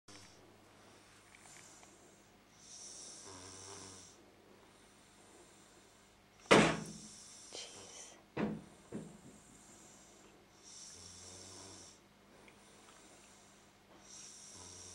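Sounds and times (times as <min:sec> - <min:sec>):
boy snoring: 0:02.5 - 0:04.2, 0:06.6 - 0:12.0, 0:14.0 - 0:14.9.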